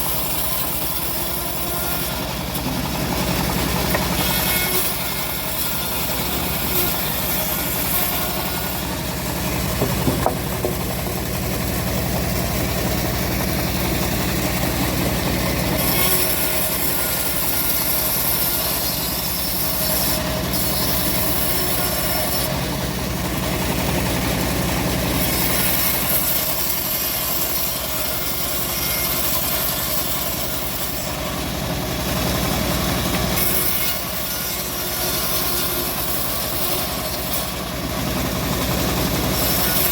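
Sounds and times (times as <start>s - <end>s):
bandsaw cutting through log: 0.0s - 39.9s
low engine hum: 5.8s - 15.8s.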